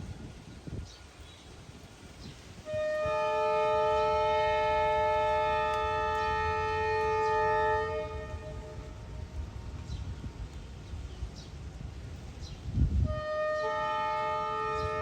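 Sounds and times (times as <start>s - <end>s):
train horn blast: 2.6s - 9.6s, 12.9s - 15.0s.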